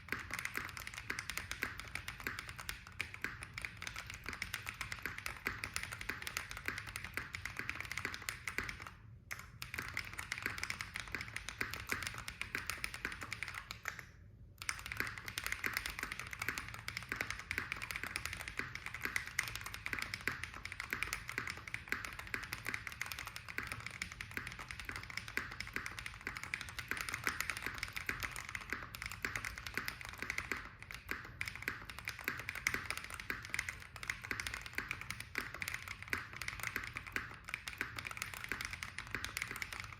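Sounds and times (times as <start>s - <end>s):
typing on mechanical keyboard: 0.0s - 39.9s.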